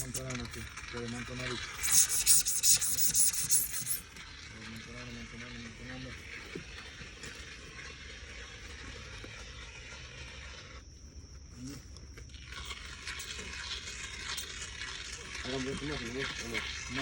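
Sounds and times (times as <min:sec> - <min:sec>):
foam adhesive gun hissing: 0:00.0 - 0:00.2, 0:01.8 - 0:04.0.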